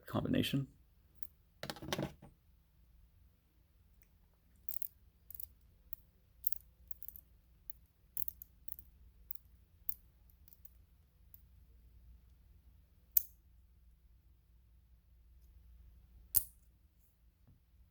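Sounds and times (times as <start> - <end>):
padlock dials clicking: 4.6 - 10.8.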